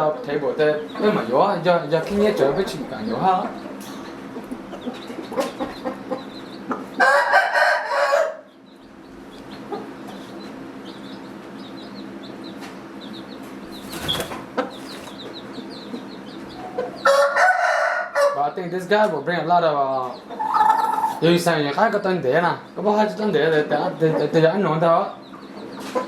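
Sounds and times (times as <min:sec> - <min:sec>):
steady low hum: 0:00.0 - 0:17.1
rooster crowing: 0:07.0 - 0:08.5, 0:17.0 - 0:18.5, 0:20.4 - 0:21.2.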